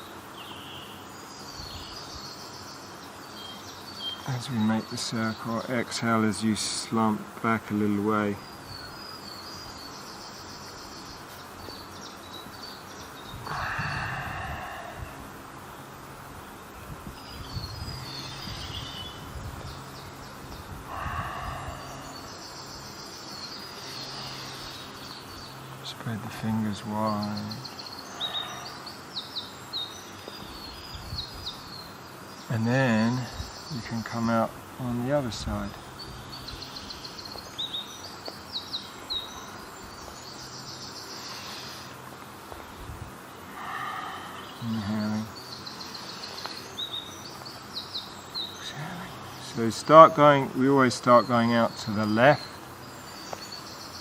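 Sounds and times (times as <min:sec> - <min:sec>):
birds chirping and calling: 0:00.0 - 0:54.0
steady low hum: 0:00.0 - 0:54.0
thin high buzzing: 0:00.0 - 0:54.0
loud low bird call: 0:13.2 - 0:15.5, 0:17.2 - 0:25.0, 0:27.5 - 0:29.4, 0:43.4 - 0:47.1.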